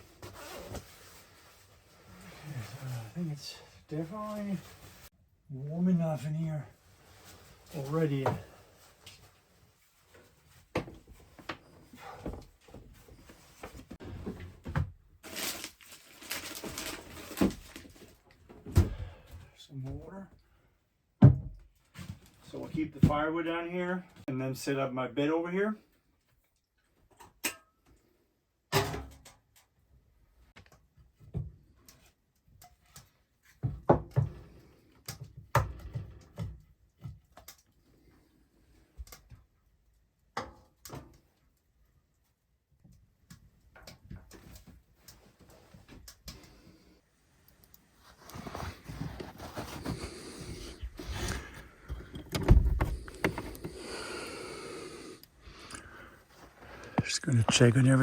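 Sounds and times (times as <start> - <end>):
rustling: 15.2 - 18.2, 47.3 - 54.4
objects knocking and thudding: 21.2 - 22.2, 33.6 - 34.6, 50.8 - 53.9.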